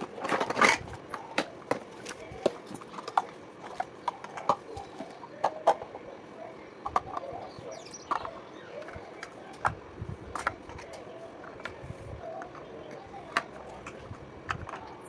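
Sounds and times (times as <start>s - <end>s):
objects clicking and tapping: 0.0s - 6.0s, 8.0s - 15.0s
faint wavering chirps: 4.6s - 9.6s.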